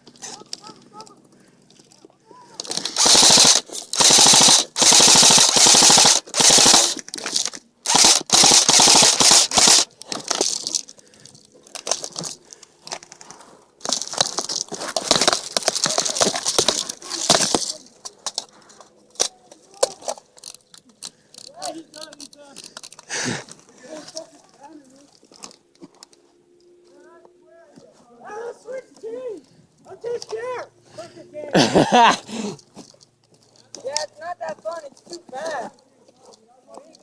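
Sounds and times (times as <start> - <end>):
airsoft guns firing full-auto: 2.6 - 10.8, 13.8 - 17.8
single airsoft shots: 2.9 - 7.0.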